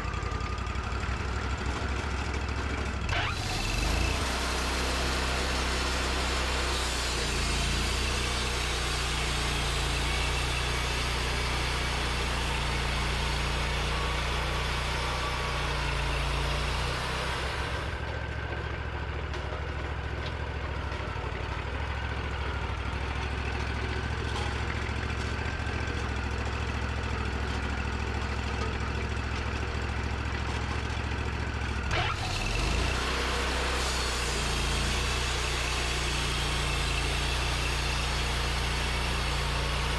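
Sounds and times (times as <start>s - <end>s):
sawmill engine running: 0.0s - 39.9s
saw hiss cutting logs: 3.1s - 18.0s, 31.9s - 39.9s.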